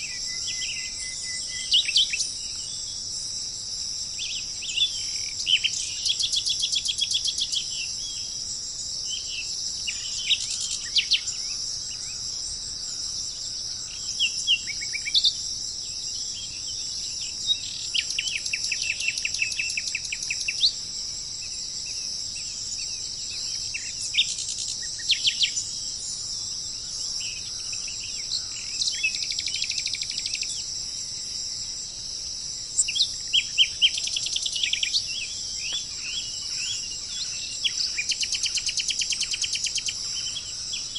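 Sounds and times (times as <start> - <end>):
bird chirps: 0.0 - 3.0, 4.2 - 8.4, 13.0 - 15.4, 16.1 - 20.8, 21.9 - 26.0, 26.8 - 30.7, 32.8 - 40.9
insects chorus: 0.0 - 40.9.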